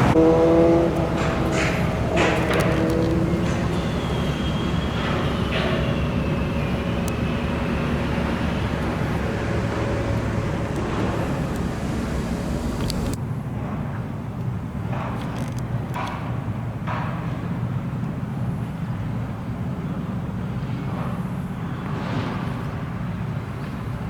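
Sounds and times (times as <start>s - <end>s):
road vehicles rumbling past: 0.0s - 13.2s.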